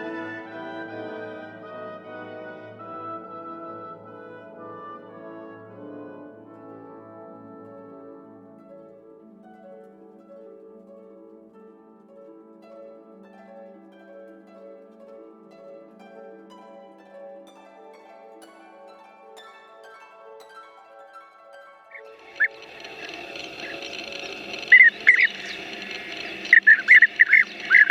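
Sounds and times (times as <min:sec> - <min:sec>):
plucked-string notes: 0:21.9 - 0:27.9.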